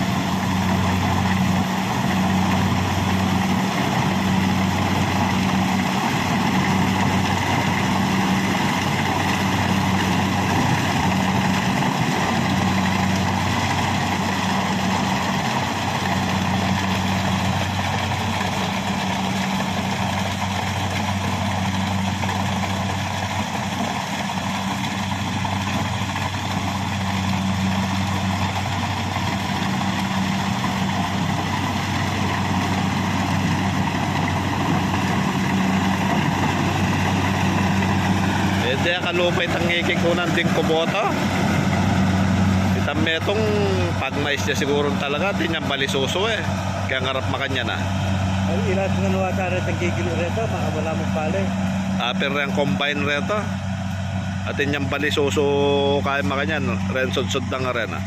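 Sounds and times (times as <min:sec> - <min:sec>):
combine harvester engine droning: 0:00.0 - 0:58.0.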